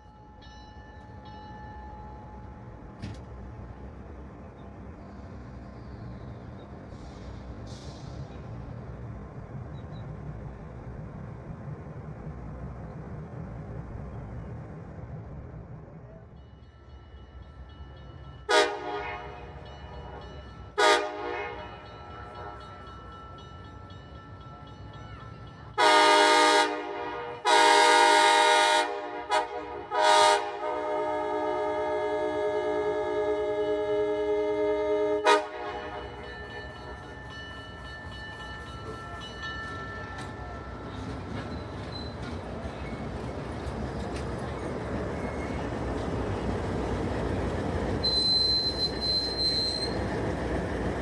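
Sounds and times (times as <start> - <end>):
train rumbling: 0.0 - 51.0
locomotive air horn blasts: 18.5 - 19.6, 20.8 - 22.6, 25.8 - 36.3.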